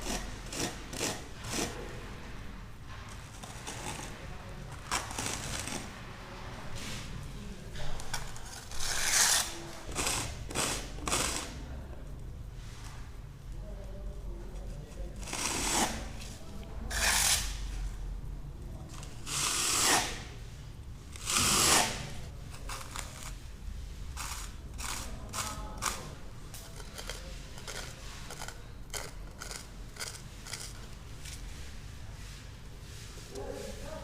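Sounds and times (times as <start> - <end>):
hand tool scraping plaster: 0.0 - 1.9, 3.3 - 4.2, 4.8 - 6.0, 8.2 - 11.6, 15.1 - 17.5, 19.2 - 20.4, 21.2 - 23.4, 24.2 - 31.4.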